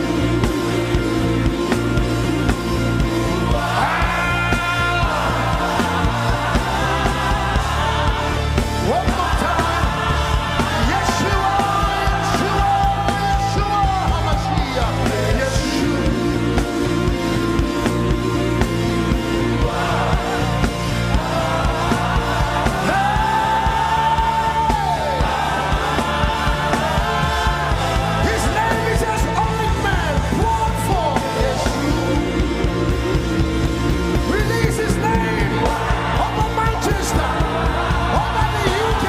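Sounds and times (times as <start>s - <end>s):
gospel band playing: 0.0s - 39.0s.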